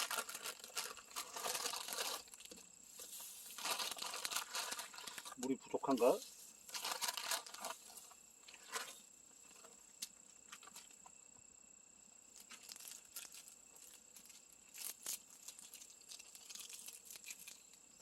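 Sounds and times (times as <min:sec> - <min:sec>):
plastic packet crinkling: 0:00.0 - 0:02.6, 0:03.5 - 0:08.0, 0:12.4 - 0:17.8.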